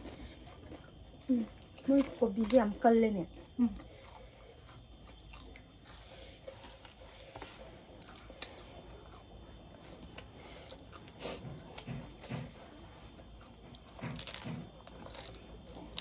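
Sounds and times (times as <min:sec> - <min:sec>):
chewing food: 0:00.0 - 0:16.0
crisp clicks and crunches: 0:13.5 - 0:16.0.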